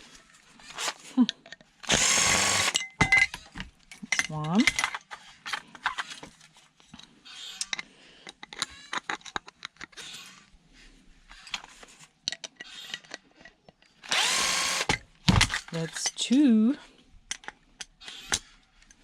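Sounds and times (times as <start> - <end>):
power drill spinning up: 0.6 - 1.1, 1.8 - 2.8, 14.0 - 15.0.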